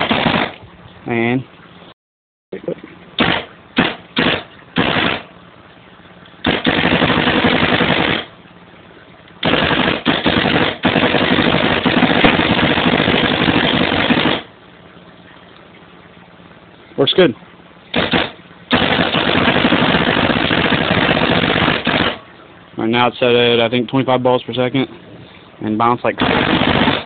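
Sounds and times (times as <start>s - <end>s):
paintball marker firing: 3.2s - 5.2s, 18.0s - 22.2s.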